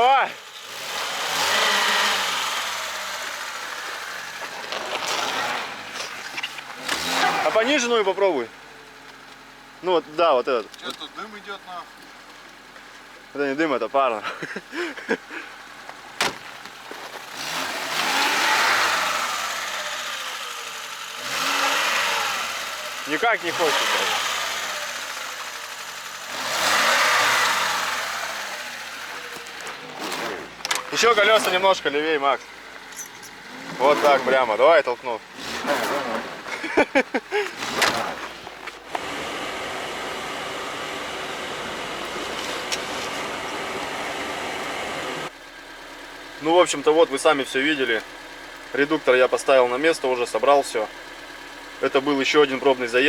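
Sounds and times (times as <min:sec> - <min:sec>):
wheels spinning in snow: 0:00.0 - 0:08.4, 0:16.6 - 0:45.3
car engine revving: 0:00.0 - 0:12.3, 0:14.1 - 0:53.0.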